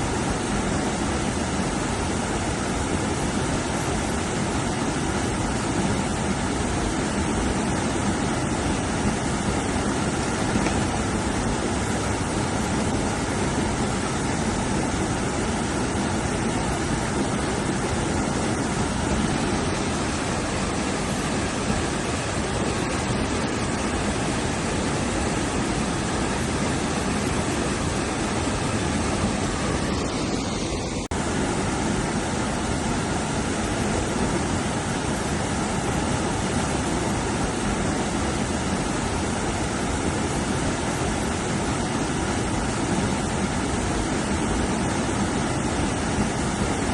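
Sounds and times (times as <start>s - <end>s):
river rapids roaring: 0.0s - 46.9s.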